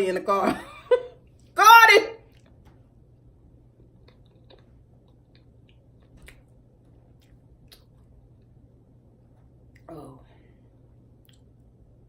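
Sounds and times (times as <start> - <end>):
soft chewing: 3.6 - 9.9, 11.0 - 11.8
wet mouth clicks: 4.0 - 6.5, 7.2 - 8.1, 11.2 - 11.5.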